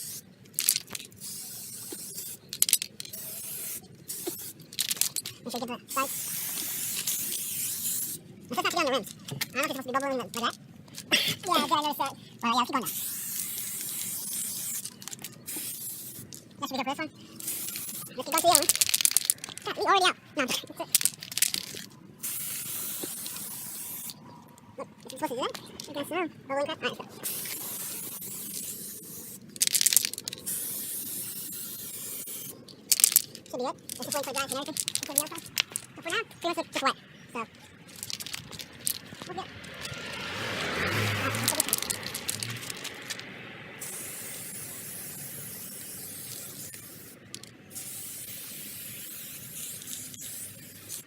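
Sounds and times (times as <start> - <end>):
aerosol spray hissing: 0.0 - 0.2, 1.2 - 2.4, 3.1 - 5.0, 5.9 - 8.2, 12.8 - 16.3, 17.4 - 18.8, 22.2 - 24.2, 27.2 - 33.3, 43.8 - 51.0.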